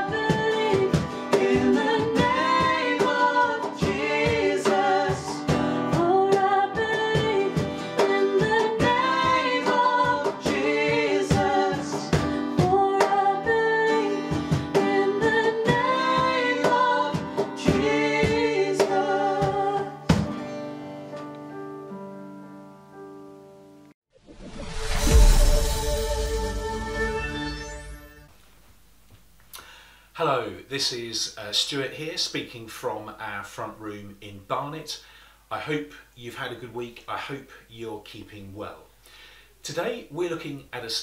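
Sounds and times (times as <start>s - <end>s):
person singing worship song: 0.0s - 20.1s
strummed acoustic guitar: 0.0s - 21.4s.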